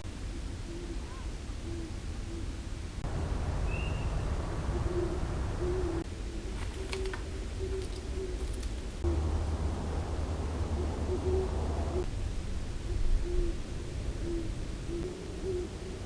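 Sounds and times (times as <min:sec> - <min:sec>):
low rumble and hiss: 0:00.0 - 0:16.0
owl hooting: 0:00.3 - 0:02.6, 0:03.7 - 0:08.4, 0:10.6 - 0:12.1, 0:12.8 - 0:13.6, 0:14.2 - 0:16.0.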